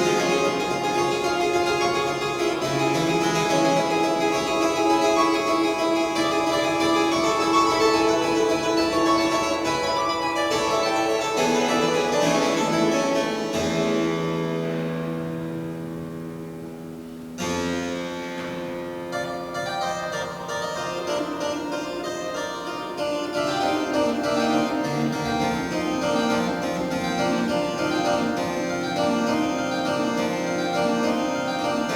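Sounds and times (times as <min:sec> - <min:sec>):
pipe organ chords: 0:00.0 - 0:15.6, 0:22.9 - 0:31.9.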